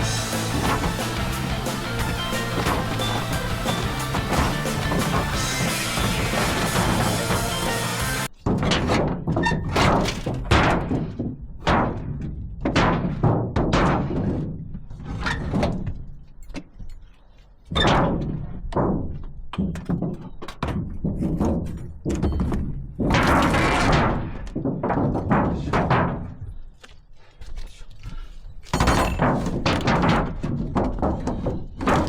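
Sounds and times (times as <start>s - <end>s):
background music: 0.0s - 8.3s
knocks and thuds: 0.0s - 16.2s, 17.7s - 26.6s, 28.7s - 32.0s.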